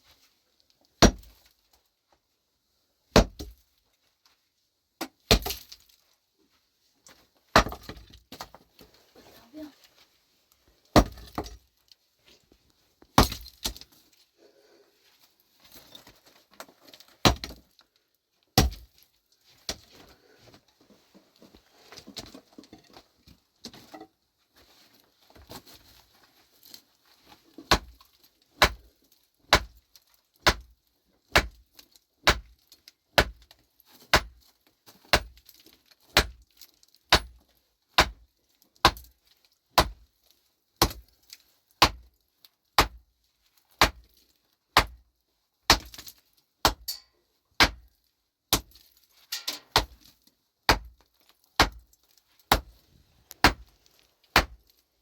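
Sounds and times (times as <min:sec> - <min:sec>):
pickaxe striking rocky ground: 0:01.0 - 0:01.4, 0:03.1 - 0:03.6, 0:05.0 - 0:05.9, 0:07.5 - 0:08.6, 0:10.9 - 0:11.6, 0:13.1 - 0:14.0, 0:17.2 - 0:17.6, 0:18.6 - 0:19.0, 0:27.7 - 0:28.9, 0:29.5 - 0:29.8, 0:30.4 - 0:30.7, 0:31.3 - 0:32.6, 0:33.2 - 0:34.4, 0:35.0 - 0:35.4, 0:36.1 - 0:36.4, 0:37.1 - 0:37.4, 0:38.0 - 0:38.2, 0:38.8 - 0:39.1, 0:39.8 - 0:40.0, 0:40.8 - 0:41.1, 0:41.8 - 0:42.1, 0:42.8 - 0:43.0, 0:43.8 - 0:44.1, 0:44.8 - 0:45.0, 0:45.7 - 0:47.9, 0:48.5 - 0:51.0, 0:51.6 - 0:51.9, 0:52.5 - 0:52.8, 0:53.4 - 0:53.7, 0:54.3 - 0:54.7.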